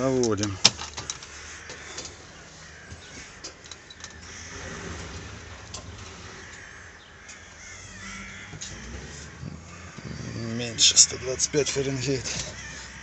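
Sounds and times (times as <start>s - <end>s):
diesel engine idling: 4.1s - 13.0s.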